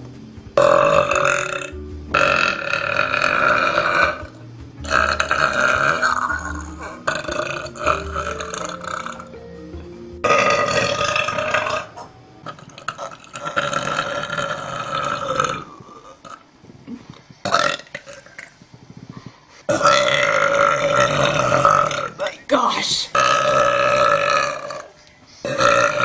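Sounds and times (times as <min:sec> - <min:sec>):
background music: 0:00.0 - 0:16.8, 0:18.6 - 0:26.0
woman belching: 0:00.6 - 0:09.3, 0:10.3 - 0:16.4, 0:19.7 - 0:22.2, 0:23.1 - 0:24.9, 0:25.5 - 0:26.0.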